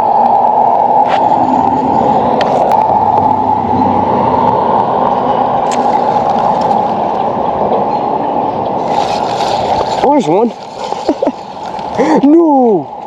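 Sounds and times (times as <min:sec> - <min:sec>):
river water rushing: 0:01.7 - 0:07.9, 0:08.7 - 0:12.4.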